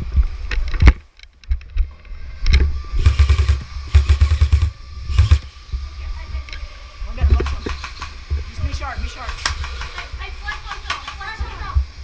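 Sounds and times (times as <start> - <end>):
airsoft gun bursts: 3.0 - 5.5, 7.4 - 8.3, 9.2 - 11.4.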